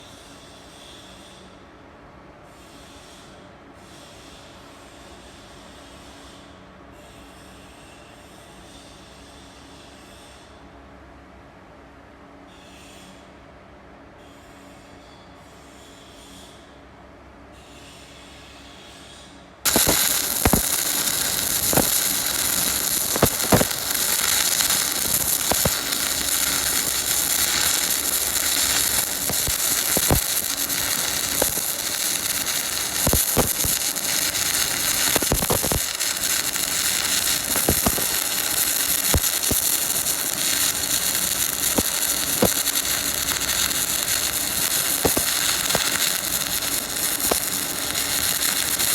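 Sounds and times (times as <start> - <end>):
welding arc hissing and popping: 19.7 - 48.9.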